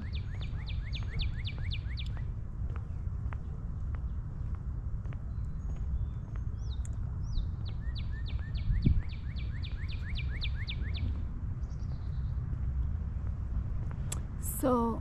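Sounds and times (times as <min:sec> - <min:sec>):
songbird singing: 0:00.0 - 0:12.9
steady low rumble: 0:00.0 - 0:15.0.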